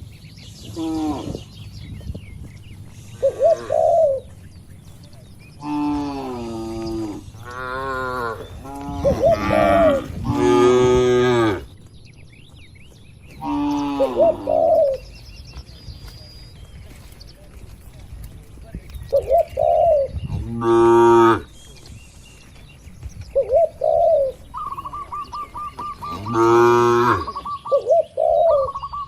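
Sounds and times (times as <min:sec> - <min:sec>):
doves cooing: 0:00.6 - 0:01.6, 0:02.8 - 0:11.9, 0:13.2 - 0:15.4, 0:19.0 - 0:21.6, 0:23.2 - 0:29.0
cattle mooing: 0:05.6 - 0:11.7, 0:26.1 - 0:27.4.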